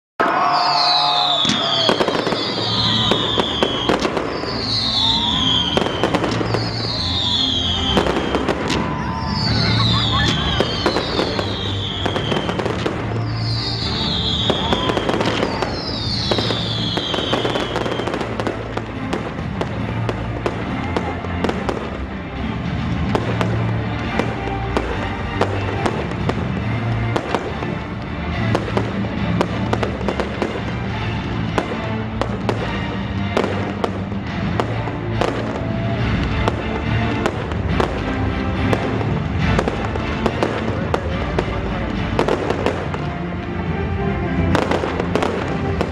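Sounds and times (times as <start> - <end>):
fireworks bangs and crackling: 0.2 - 45.9
music: 0.2 - 45.9
fireworks falling whistles: 0.3 - 18.6.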